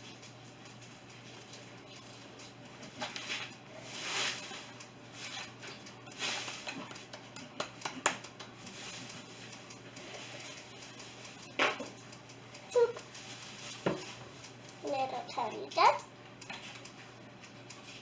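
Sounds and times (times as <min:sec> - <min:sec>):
soft rustles: 0:02.9 - 0:07.1, 0:13.0 - 0:14.5
small clicks and taps: 0:04.4 - 0:18.0.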